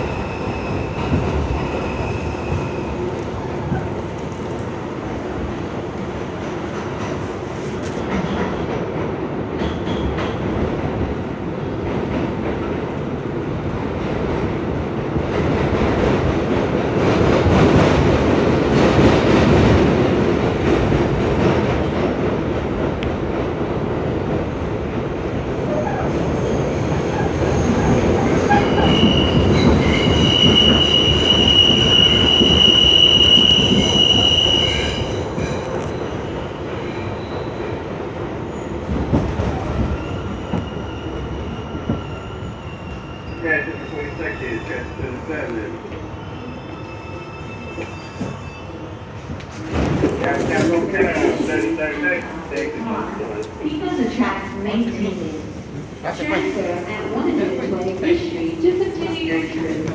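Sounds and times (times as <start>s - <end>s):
train wheels rumbling on rail: 0.0s - 59.9s.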